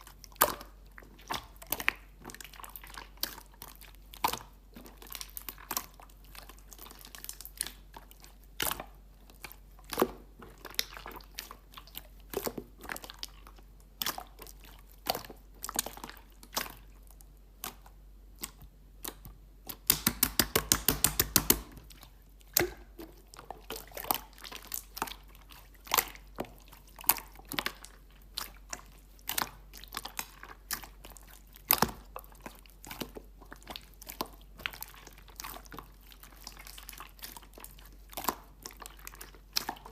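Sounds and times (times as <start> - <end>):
slime squishing with sticky clicks: 0.0 - 39.9
rapid loud slime pops: 18.4 - 21.9.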